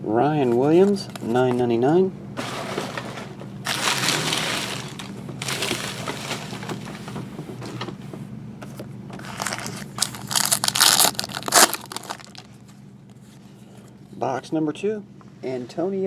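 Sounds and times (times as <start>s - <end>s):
card wrappers rustling and crinkling: 0.5s - 1.6s, 2.4s - 7.3s, 8.6s - 12.8s.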